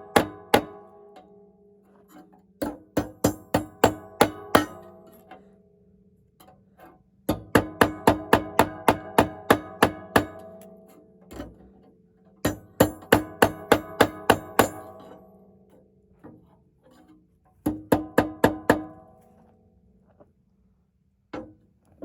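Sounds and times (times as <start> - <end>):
hammer striking metal on anvil: 0.0 - 0.9, 2.6 - 5.1, 7.3 - 11.4, 12.4 - 15.3, 17.6 - 19.0.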